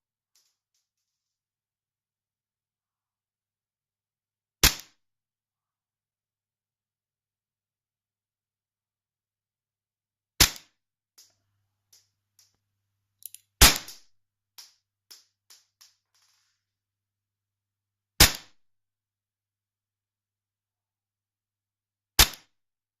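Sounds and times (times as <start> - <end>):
airsoft pistol shots: 4.6 - 5.0, 10.4 - 10.7, 13.6 - 14.1, 18.2 - 18.5, 22.2 - 22.5.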